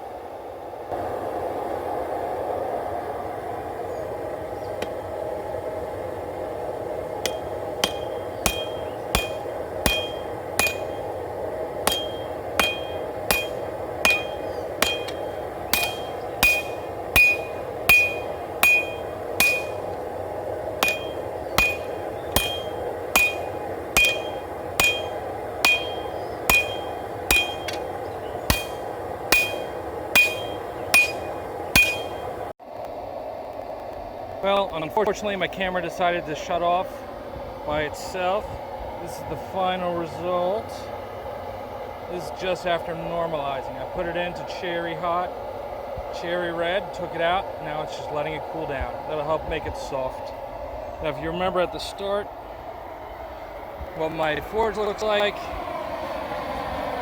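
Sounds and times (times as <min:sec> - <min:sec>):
forge roaring: 0:05.2 - 0:32.5
hammer striking steel on anvil: 0:07.2 - 0:32.5.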